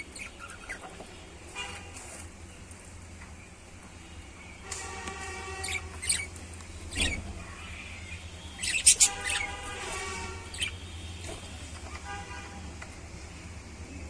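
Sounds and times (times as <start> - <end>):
lovebirds chirping: 0.0 - 1.3, 5.6 - 12.0
buzzy bird call: 8.5 - 10.8.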